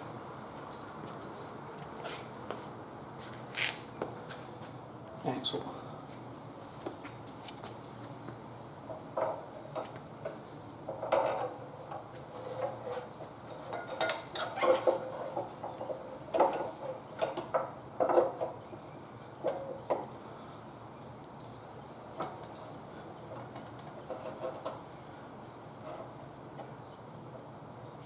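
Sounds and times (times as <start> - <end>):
metal clinks and knocks: 9.2 - 18.6.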